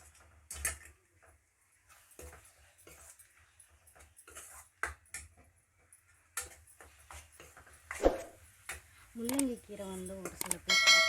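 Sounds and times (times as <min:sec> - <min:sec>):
spatula scraping a pan: 0:01.9 - 0:04.8.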